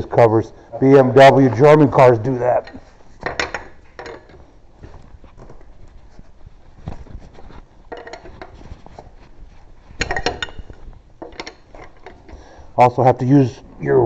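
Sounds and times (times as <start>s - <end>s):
hand tools clicking and clinking: 2.4s - 4.5s, 7.8s - 8.7s, 9.9s - 12.5s.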